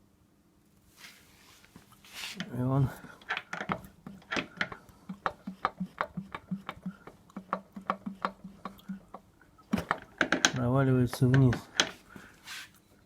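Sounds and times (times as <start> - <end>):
piston knocking metallically: 3.3 - 12.0.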